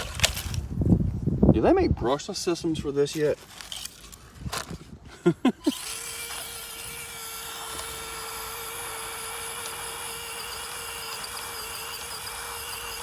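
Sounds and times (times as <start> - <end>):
small electric motor whining: 5.6 - 13.0.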